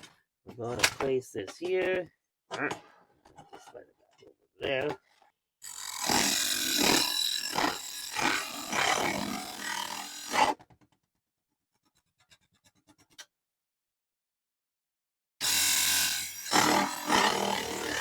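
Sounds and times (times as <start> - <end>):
saw blade rasping through metal: 5.7 - 10.6, 15.4 - 18.0.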